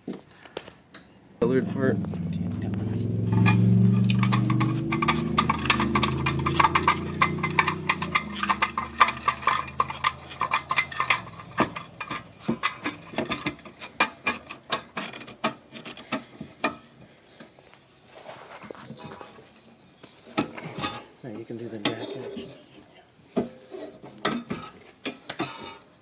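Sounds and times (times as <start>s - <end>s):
low hum: 1.4s - 13.6s.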